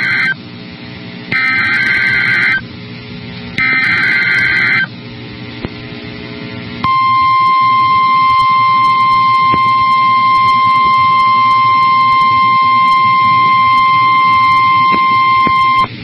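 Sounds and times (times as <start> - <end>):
steady attention tone: 0.0 - 0.4, 1.3 - 2.7, 3.6 - 5.0, 6.8 - 15.9
warbling digital data tones: 0.0 - 0.4, 1.3 - 2.6, 3.6 - 4.9, 6.8 - 15.9.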